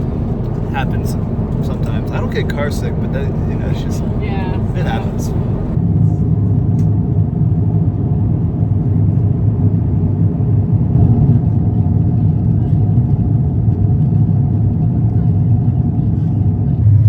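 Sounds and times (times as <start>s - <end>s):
faint steady hum: 0.0s - 5.8s
aircraft cabin rumble: 0.0s - 17.0s.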